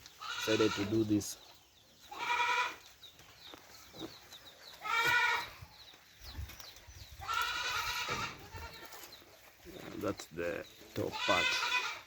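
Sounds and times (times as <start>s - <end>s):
goats bleating: 0.2s - 1.1s, 2.1s - 2.9s, 4.8s - 5.6s, 7.2s - 9.0s, 11.0s - 12.0s.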